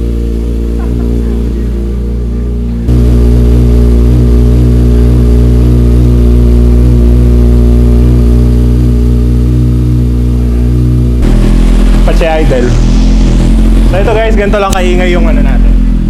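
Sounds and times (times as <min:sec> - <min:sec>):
motorcycle engine idling: 0:00.0 - 0:16.0.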